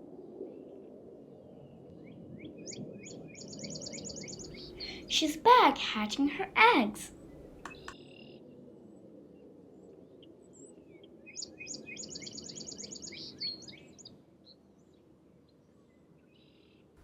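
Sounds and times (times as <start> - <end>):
bird chirps: 3.4 - 5.1
songbird trilling: 3.4 - 5.1.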